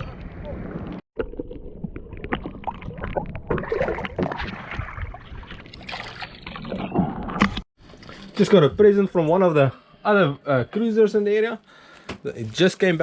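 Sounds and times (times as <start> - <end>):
water splashing: 1.2 - 8.5.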